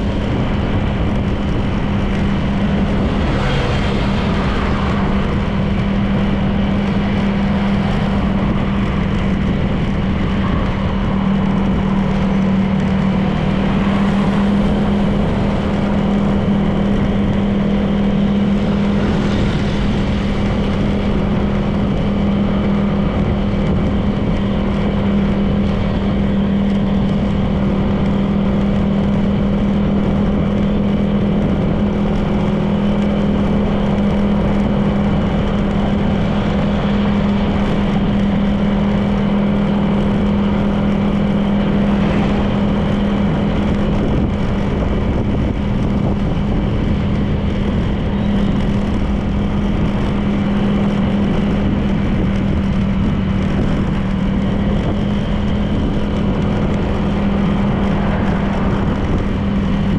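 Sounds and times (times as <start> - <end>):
road and wind noise: 0.0 - 59.9
scooter engine cruising: 0.0 - 59.9.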